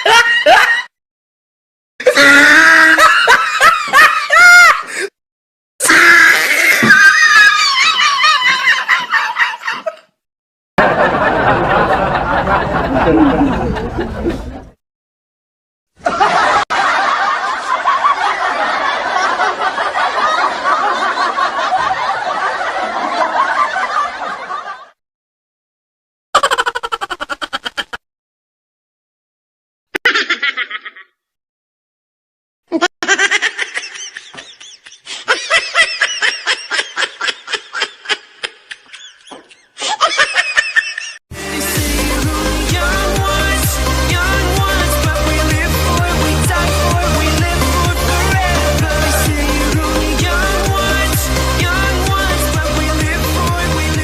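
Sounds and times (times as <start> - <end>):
people laughing: 0.0 - 0.9, 2.1 - 5.1, 6.1 - 10.1, 10.8 - 14.8, 16.0 - 25.0, 32.8 - 41.2, 44.2 - 54.0
high-pitched laughing: 12.6 - 14.7, 26.4 - 28.0, 30.0 - 31.2, 32.7 - 41.2.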